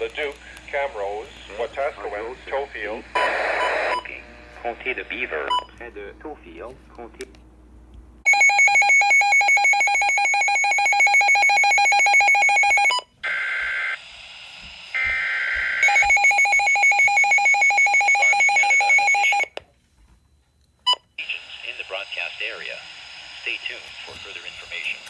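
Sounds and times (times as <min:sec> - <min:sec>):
weather radio alarm beeping: 0:03.1 - 0:05.8, 0:15.0 - 0:19.6.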